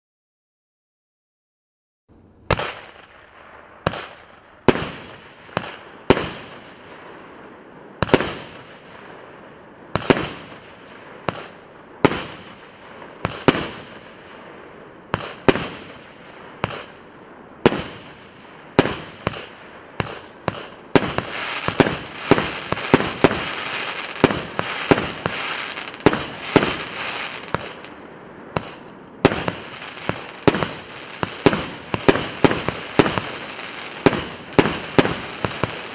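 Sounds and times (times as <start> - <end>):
firework bangs: 2.5 - 6.6, 17.6 - 35.9
firework crackling: 17.7 - 35.9.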